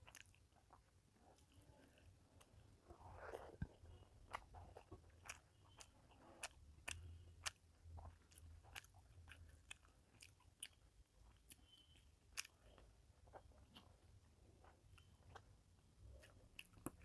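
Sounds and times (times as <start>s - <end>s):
person chewing food: 0.0s - 17.0s.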